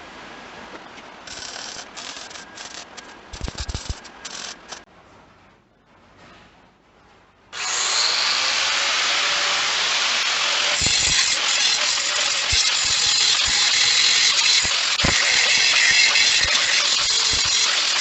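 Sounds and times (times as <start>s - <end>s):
power tool running with hiss: 7.6s - 18.0s.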